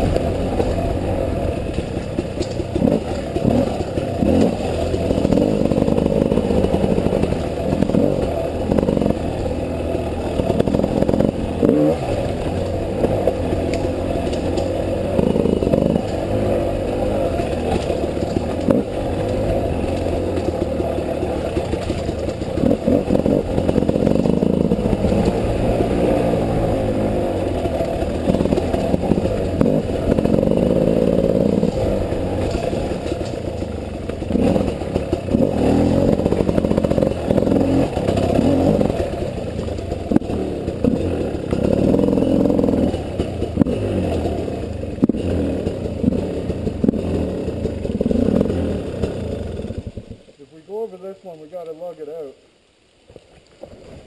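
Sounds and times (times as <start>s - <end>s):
dirt bike engine revving: 0.0s - 50.3s
bike clattering over rocks: 16.0s - 25.6s.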